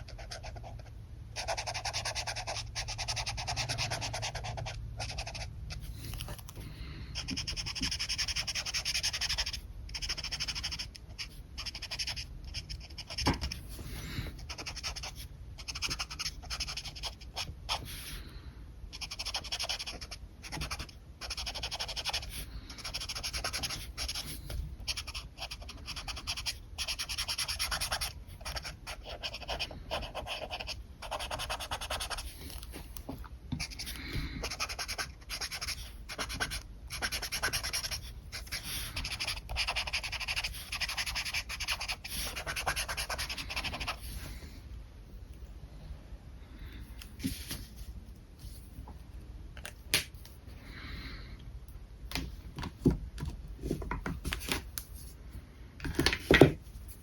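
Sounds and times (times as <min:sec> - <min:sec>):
marker scratching on paper: 0:00.0 - 0:06.4, 0:07.2 - 0:13.8, 0:14.4 - 0:18.0, 0:18.9 - 0:32.6, 0:33.6 - 0:44.1.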